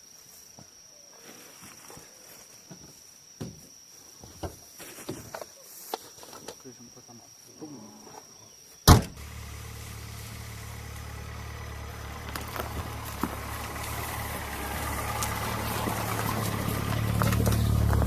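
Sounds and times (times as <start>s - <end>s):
engine idling: 9.2s - 18.0s.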